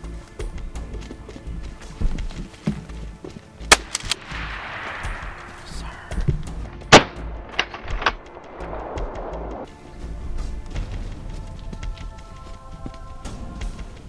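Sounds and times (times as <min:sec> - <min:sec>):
background music: 0:00.0 - 0:14.0
shotgun blasts with echo: 0:03.7 - 0:09.7.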